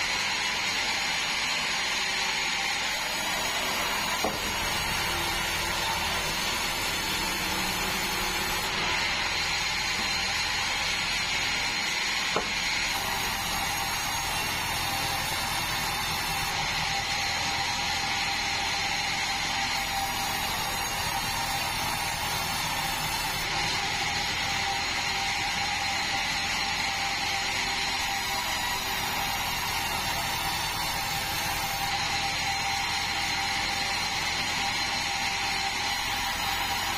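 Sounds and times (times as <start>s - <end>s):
band saw cutting wood: 0.0s - 36.9s.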